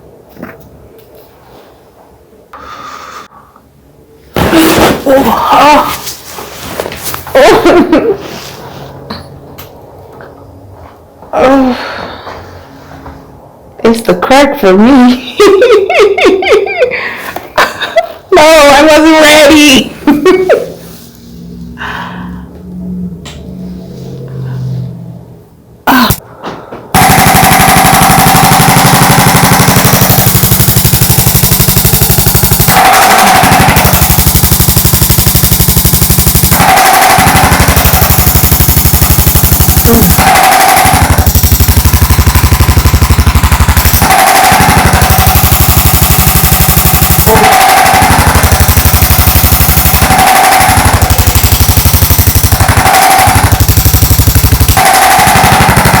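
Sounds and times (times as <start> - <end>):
percussion device rapid rattle: 27.0 - 56.0.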